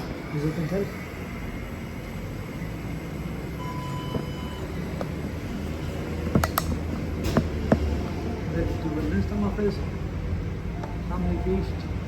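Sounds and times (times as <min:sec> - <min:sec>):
low mechanical rumble: 0:00.0 - 0:12.0
short single-tone beep: 0:03.6 - 0:04.7.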